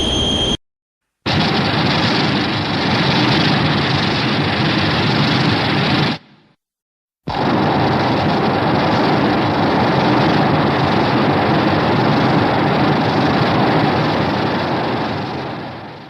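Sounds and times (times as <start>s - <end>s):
creature rushing rumble: 7.3s - 10.9s.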